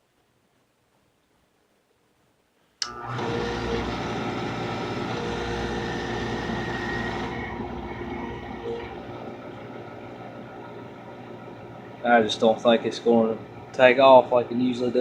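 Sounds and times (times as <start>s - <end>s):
oil burner motor humming: 2.8s - 15.0s.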